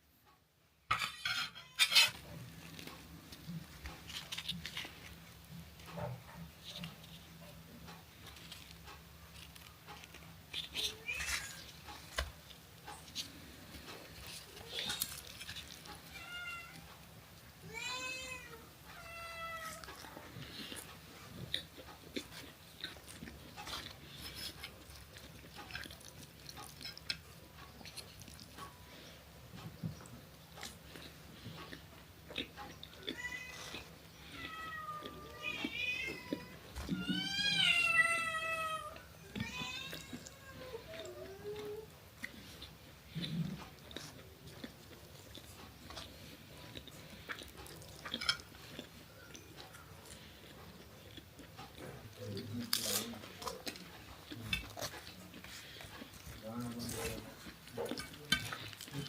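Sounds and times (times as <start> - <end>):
cat meowing: 16.0 - 16.9, 17.6 - 20.0, 33.0 - 41.9.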